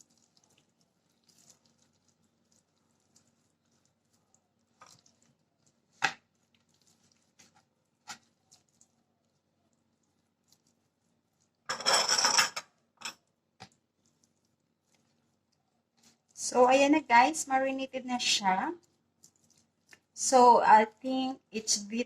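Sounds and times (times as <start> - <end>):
dishes and utensils knocking: 11.7 - 12.7.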